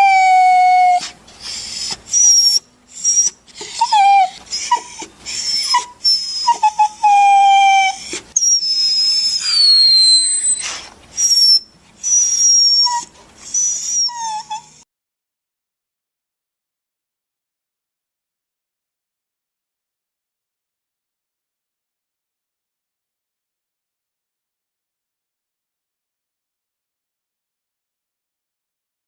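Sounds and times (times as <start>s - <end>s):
dog whining and whimpering: 0.0s - 14.9s.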